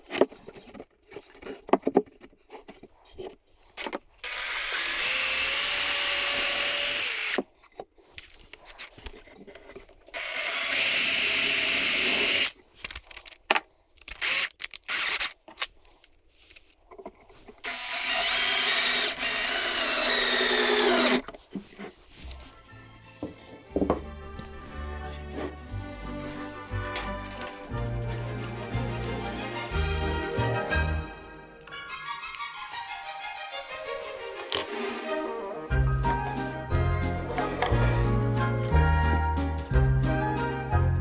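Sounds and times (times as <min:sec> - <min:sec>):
knocks and clicks of handling wood: 0:00.0 - 0:04.1, 0:23.2 - 0:24.2
power drill driving screws: 0:04.2 - 0:07.4, 0:10.2 - 0:12.5, 0:14.2 - 0:15.3, 0:17.6 - 0:21.2.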